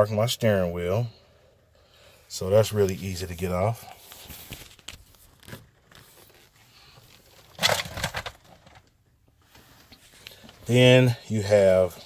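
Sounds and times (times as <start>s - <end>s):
rustling and scraping of parts: 2.8s - 10.8s.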